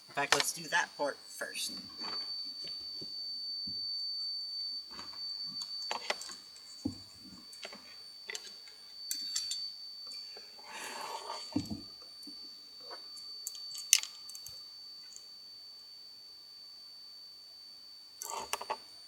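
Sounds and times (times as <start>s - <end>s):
steady high-pitched whine: 0.0s - 19.0s
light clicks and taps of tools: 5.6s - 10.2s.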